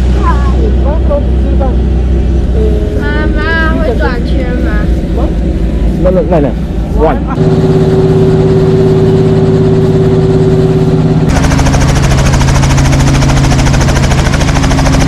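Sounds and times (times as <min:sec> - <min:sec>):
helicopter engine and rotor: 0:04.9 - 0:15.0.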